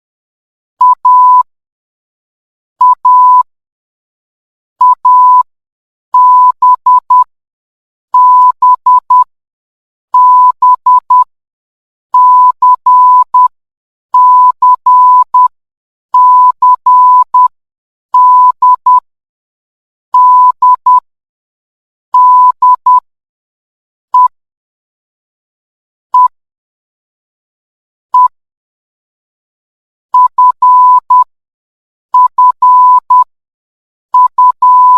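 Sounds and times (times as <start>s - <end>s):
morse code beeps: 0.8s - 1.5s, 2.8s - 3.5s, 4.8s - 5.5s, 6.2s - 7.3s, 8.2s - 9.3s, 10.2s - 11.3s, 12.2s - 13.5s, 14.2s - 15.5s, 16.2s - 17.5s, 18.2s - 19.0s, 20.2s - 21.0s, 22.2s - 23.0s, 24.2s - 24.4s, 26.2s - 26.4s, 28.2s - 28.4s, 30.2s - 31.3s, 32.2s - 33.3s, 34.2s - 34.9s.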